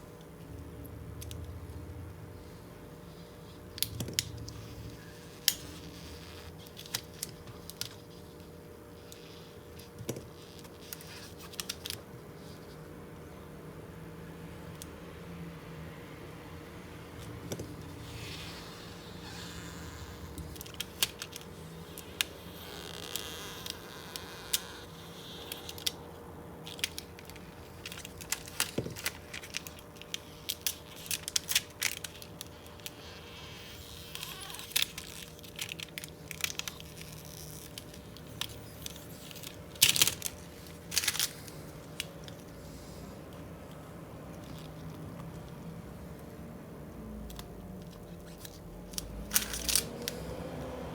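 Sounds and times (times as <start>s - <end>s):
film peeling crackles and clicks: 3.1s - 12.8s, 17.2s - 46.3s, 47.2s - 50.3s
tearing rasps: 17.8s - 26.0s, 27.8s - 41.6s.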